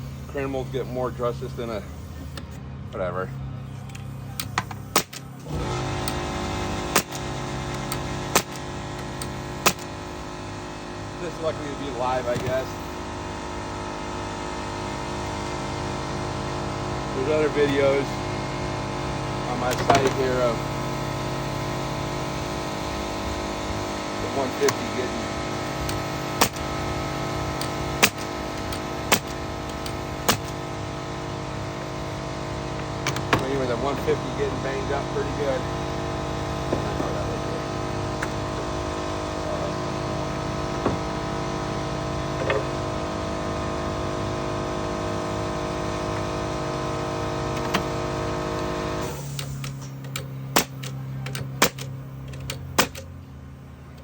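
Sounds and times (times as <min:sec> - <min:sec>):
air compressor motor running: 0:00.0 - 0:54.0
steady machine hum: 0:00.0 - 0:54.0
nail gun firing: 0:04.4 - 0:06.2, 0:06.8 - 0:10.0, 0:25.6 - 0:30.9, 0:49.0 - 0:53.1.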